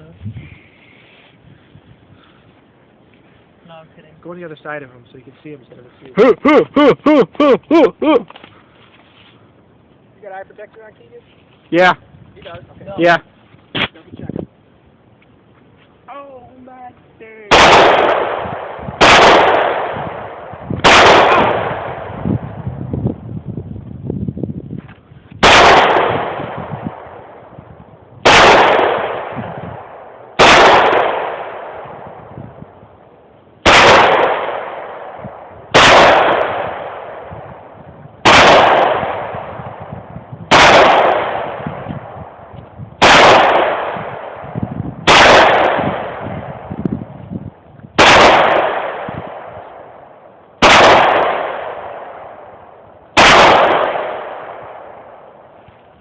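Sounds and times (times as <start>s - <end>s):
pistol shots with echo: 17.5s - 22.5s, 25.4s - 27.5s, 28.2s - 32.4s, 33.6s - 39.9s, 40.5s - 46.8s, 48.0s - 55.4s.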